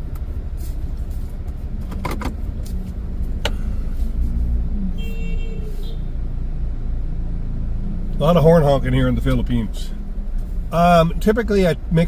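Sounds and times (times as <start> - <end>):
car road and engine rumble: 0.0 - 12.0
car horn honk: 4.9 - 6.2.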